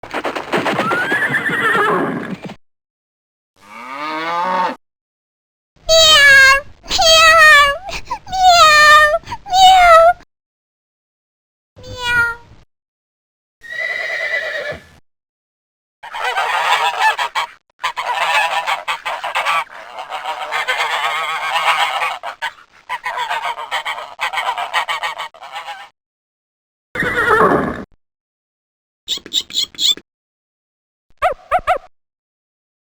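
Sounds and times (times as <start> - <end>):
cat meowing: 8.4 - 10.2, 11.8 - 12.5
geese honking: 16.0 - 25.9.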